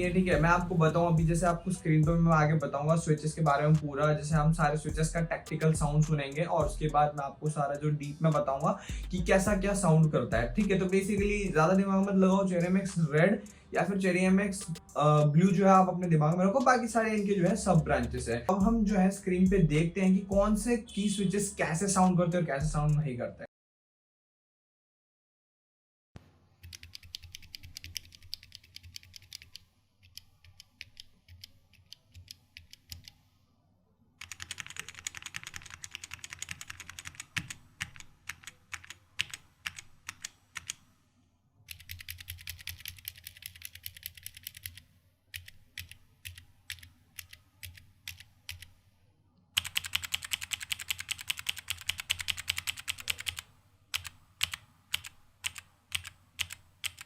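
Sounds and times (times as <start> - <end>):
mechanical keyboard typing: 26.6 - 33.1, 34.2 - 40.8, 41.7 - 48.7, 49.6 - 57.0.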